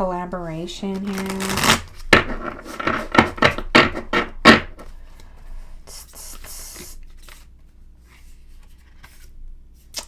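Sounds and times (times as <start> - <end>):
cards rustling: 0.9 - 3.5.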